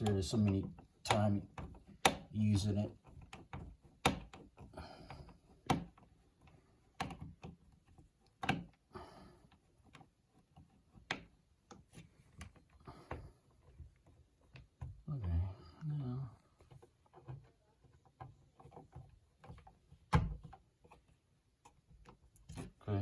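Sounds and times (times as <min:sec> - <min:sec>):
sharp clicks and knocks: 0:00.0 - 0:15.8
quiet rustling: 0:09.3 - 0:23.0.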